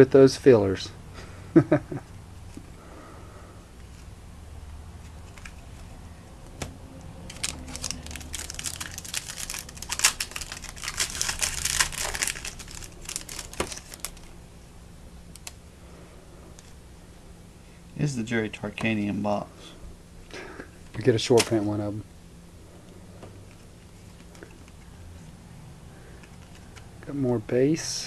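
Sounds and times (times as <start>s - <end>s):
wrapper crinkling and tearing: 7.2s - 14.3s.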